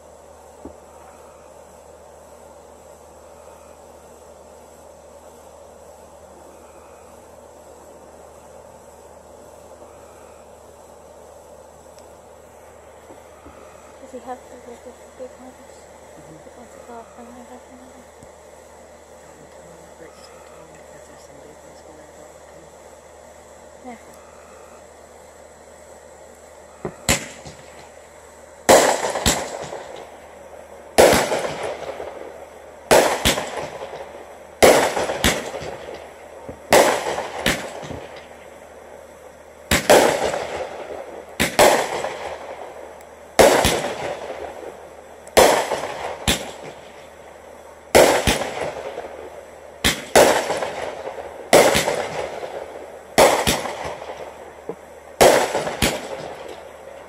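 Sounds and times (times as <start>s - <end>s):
small firework pops: 0.6s - 0.9s, 26.8s - 28.0s, 28.7s - 30.2s, 31.0s - 38.6s, 39.7s - 47.1s, 47.9s - 57.0s
fireworks bangs: 11.7s - 22.9s, 26.7s - 28.0s, 28.6s - 57.0s.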